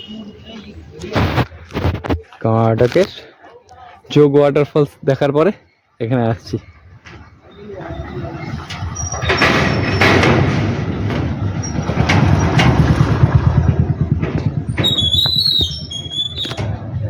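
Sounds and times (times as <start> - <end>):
high-pitched squeal: 7.5 - 17.0
loud vehicle engine running: 8.3 - 17.0.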